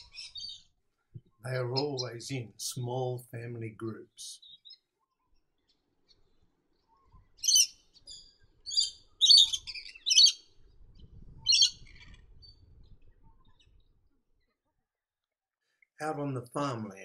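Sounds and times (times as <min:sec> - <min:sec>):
birds chattering calls: 0:00.0 - 0:02.8, 0:04.3 - 0:14.5.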